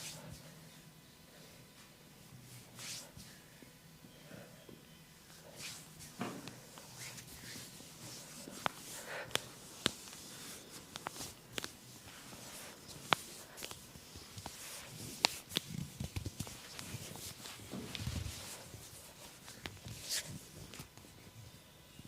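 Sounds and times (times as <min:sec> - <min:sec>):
rubbing on skin: 0:02.6 - 0:03.2, 0:05.4 - 0:21.0.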